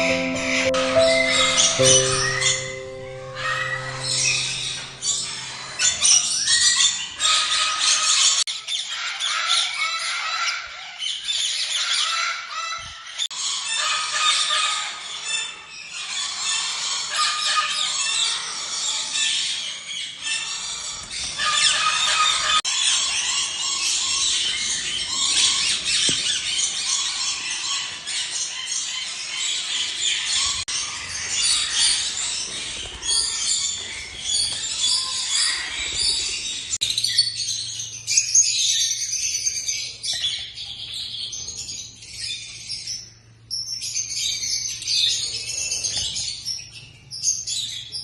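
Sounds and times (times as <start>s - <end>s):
cage birds chattering and chirping: 1.4s - 48.0s.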